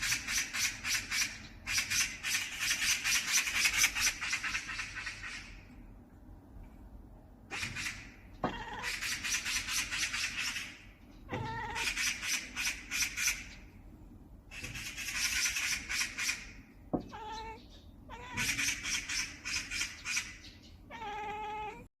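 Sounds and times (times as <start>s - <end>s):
cat chirping: 7.5s - 13.8s, 14.6s - 21.9s
high bird twittering: 14.5s - 21.8s.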